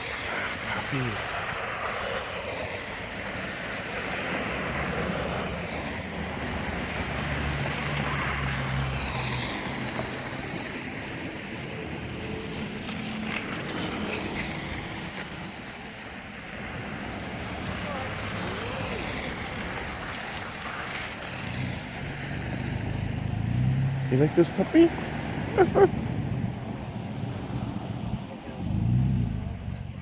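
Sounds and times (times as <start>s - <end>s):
low engine hum: 16.5s - 30.0s.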